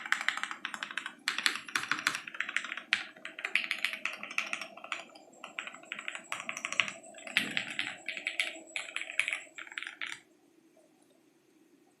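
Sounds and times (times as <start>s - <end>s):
mechanical keyboard typing: 0.0s - 10.2s.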